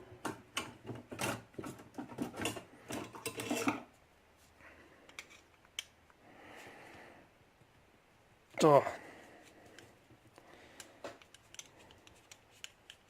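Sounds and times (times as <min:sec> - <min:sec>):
metal tools clattering: 0:02.3 - 0:03.8.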